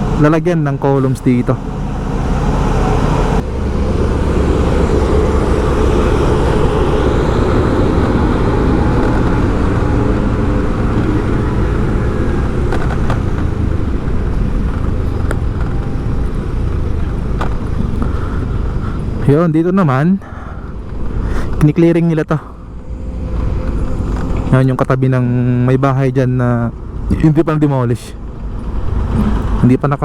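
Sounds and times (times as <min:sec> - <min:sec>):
vehicle engine and road noise: 0:00.0 - 0:30.0.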